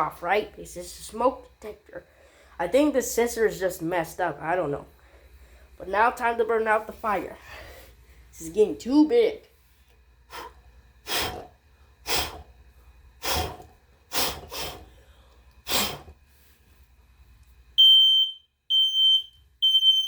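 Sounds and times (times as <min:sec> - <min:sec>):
person blowing puffs: 0:10.3 - 0:12.6, 0:13.2 - 0:16.6
smoke alarm high-pitched beeps: 0:17.8 - 0:20.0.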